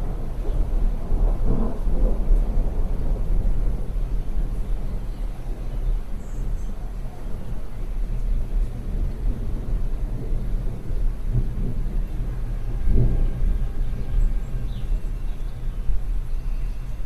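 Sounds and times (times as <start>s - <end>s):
rain: 0.0s - 17.0s
thunder rumbling: 0.0s - 17.0s.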